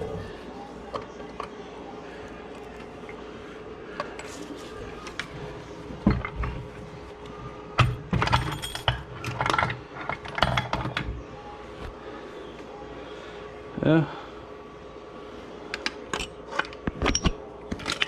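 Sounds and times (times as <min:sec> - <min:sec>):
metal clinking and rattling: 0:07.8 - 0:11.0.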